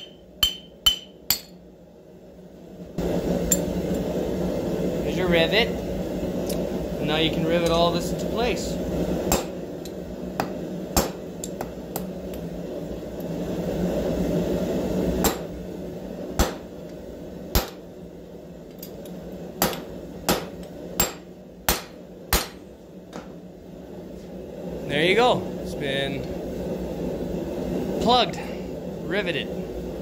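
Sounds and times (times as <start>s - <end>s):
hammer striking metal: 0.0s - 1.6s, 10.4s - 11.7s, 17.6s - 17.8s, 19.6s - 22.6s
steady low rumble: 0.0s - 18.6s.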